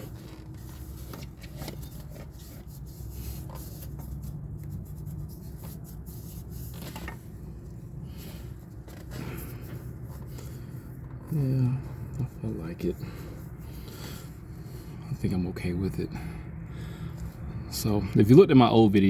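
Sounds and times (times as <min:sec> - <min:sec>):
hand rubbing and scuffing: 0:00.0 - 0:11.4
steady low hum: 0:00.0 - 0:19.0.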